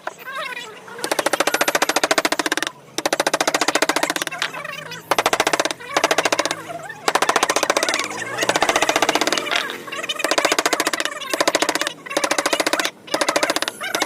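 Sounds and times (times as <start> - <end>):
power chisel tapping into wood: 1.1 - 9.6.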